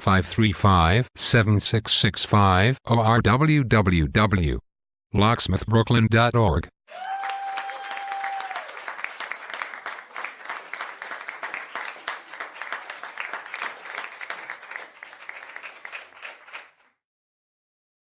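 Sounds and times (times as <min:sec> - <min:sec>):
crowd applauding: 0:06.9 - 0:17.0.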